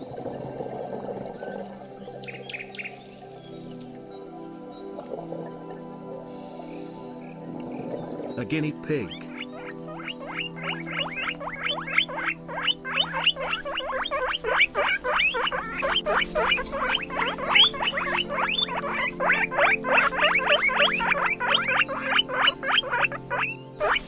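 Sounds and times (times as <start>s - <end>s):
guinea pig squeaking: 9.3s - 24.0s.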